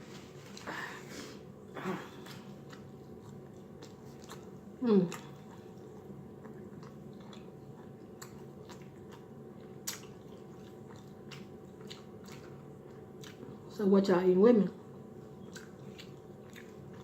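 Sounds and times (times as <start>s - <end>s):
faint steady hum: 0.0s - 17.0s
chewing and wet mouth clicks: 2.3s - 13.6s, 15.4s - 17.0s.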